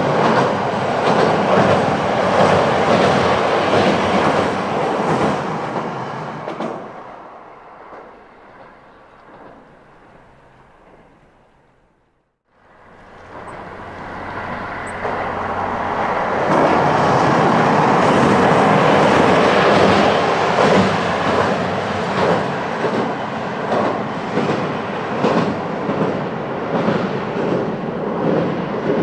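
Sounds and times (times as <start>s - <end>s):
diesel railcar passing: 0.0s - 29.0s
wheels clacking over rail joints: 12.8s - 29.0s.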